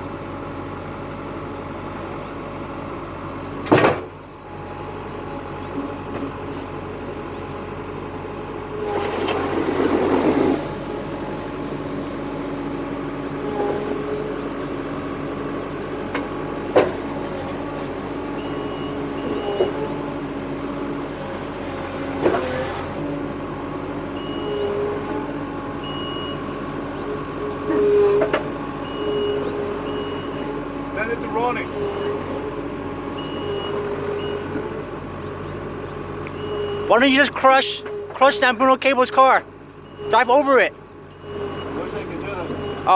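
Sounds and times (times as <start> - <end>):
construction machine engine running: 0.0 - 42.9.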